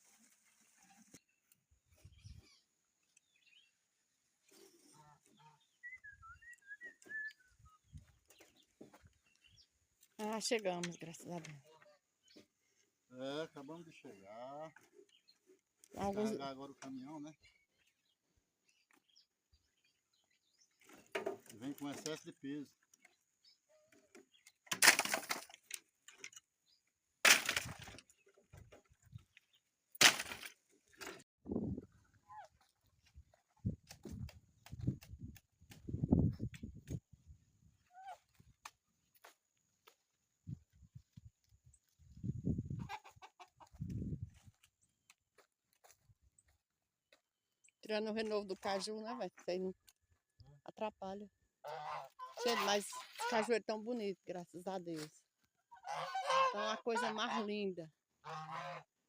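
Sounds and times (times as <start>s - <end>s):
bird whistled call: 5.8s - 7.9s
firewood logs clattering onto pile: 24.6s - 26.4s, 27.2s - 28.7s, 30.0s - 31.2s
chickens clucking: 42.6s - 44.1s, 51.6s - 53.5s.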